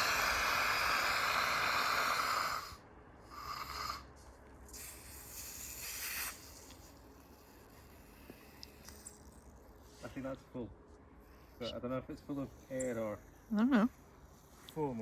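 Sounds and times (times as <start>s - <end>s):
fire extinguisher hissing: 4.7s - 6.5s.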